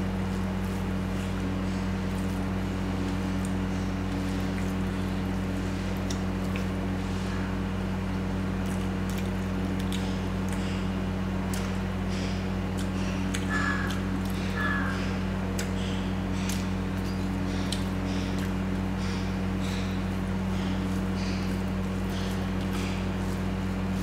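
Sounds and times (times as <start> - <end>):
steady low hum: 0.0 - 24.0
wet eating smacks: 8.6 - 10.8, 12.7 - 14.5, 15.5 - 19.2.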